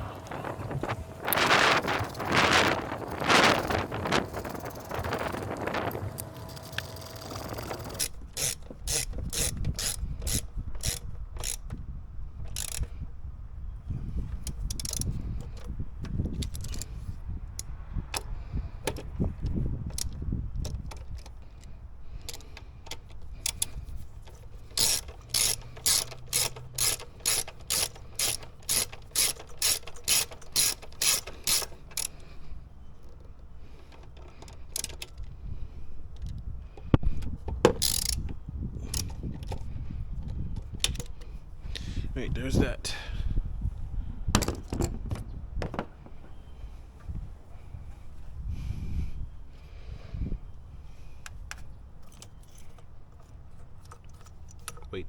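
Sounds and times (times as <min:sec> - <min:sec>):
ratchet wrench clicking: 0:01.2 - 0:11.8, 0:12.5 - 0:13.0, 0:14.4 - 0:15.7, 0:19.9 - 0:32.4, 0:33.1 - 0:35.3, 0:37.7 - 0:39.6.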